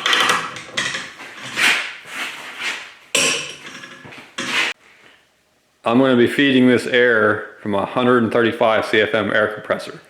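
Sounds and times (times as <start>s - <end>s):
metal tools scraping and knocking: 0.0s - 2.0s, 3.2s - 4.8s.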